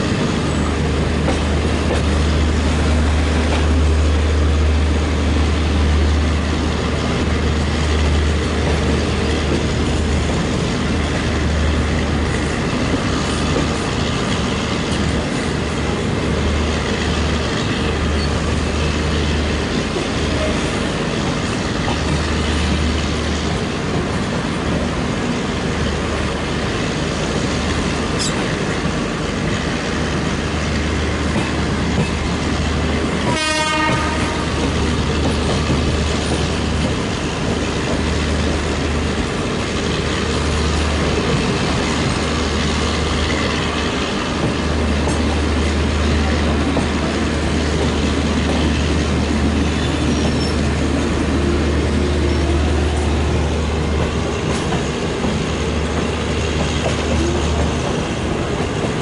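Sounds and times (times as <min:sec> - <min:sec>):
train rumble and wheel clatter: 0:00.0 - 0:59.0
locomotive horn blast: 0:33.2 - 0:34.6.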